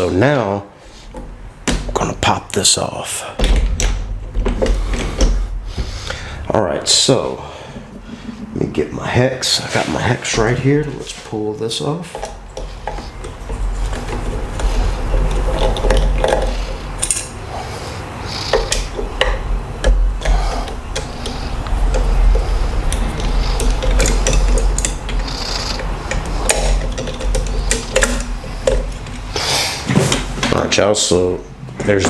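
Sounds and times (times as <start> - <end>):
metal clicks and scraping: 18.4 - 29.3.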